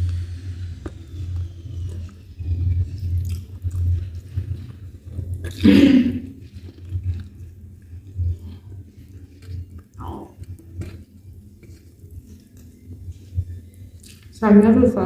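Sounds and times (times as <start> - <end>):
person chewing and biting food: 2.8 - 12.9, 14.0 - 14.4.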